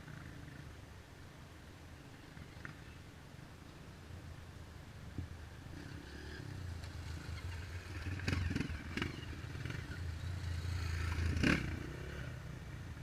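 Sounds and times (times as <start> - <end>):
dirt bike engine at low revs: 5.3 - 13.0.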